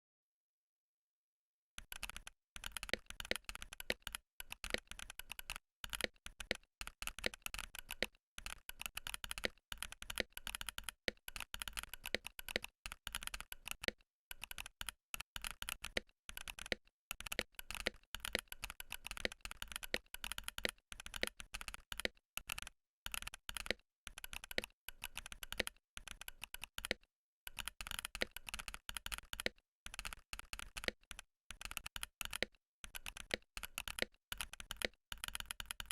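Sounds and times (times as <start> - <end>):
fast keyboard typing clacks: 1.8 - 35.9.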